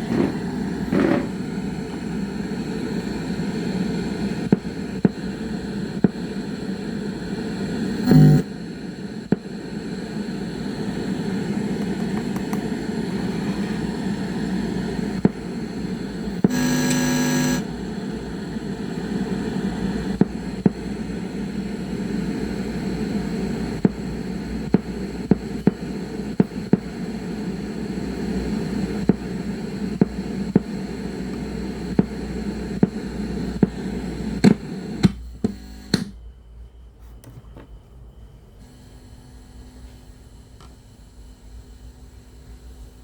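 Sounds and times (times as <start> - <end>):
speaker hum and static: 0.0 - 43.0
short buzzing tone: 8.0 - 8.4, 16.5 - 17.6.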